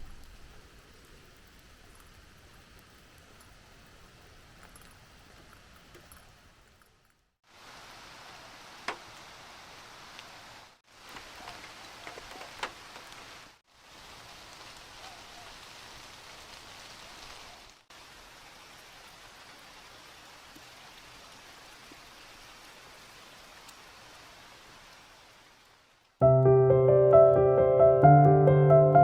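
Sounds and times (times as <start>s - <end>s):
heavy rain hissing: 7.5s - 26.1s
rain drop taps: 8.8s - 9.1s.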